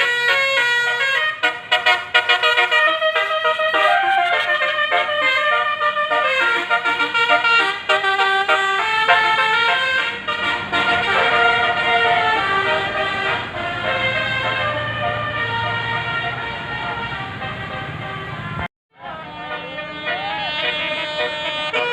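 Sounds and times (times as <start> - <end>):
multi-tone bus horn playing tune: 0.0 - 21.9
low engine rumble: 7.1 - 21.9.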